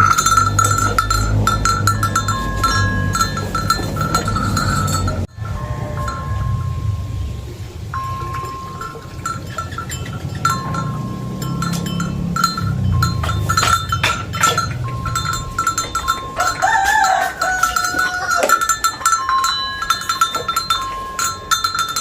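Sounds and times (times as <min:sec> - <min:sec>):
steady low rumble: 0:00.0 - 0:16.6
cow bell clanking: 0:00.0 - 0:22.0.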